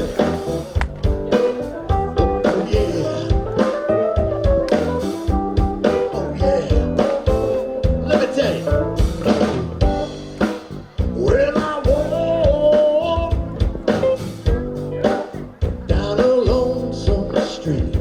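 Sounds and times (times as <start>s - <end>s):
person singing: 0.0s - 4.1s, 5.8s - 8.9s, 11.0s - 14.0s, 15.0s - 18.0s
drum kit beat: 0.0s - 18.0s
guitar: 0.0s - 18.0s.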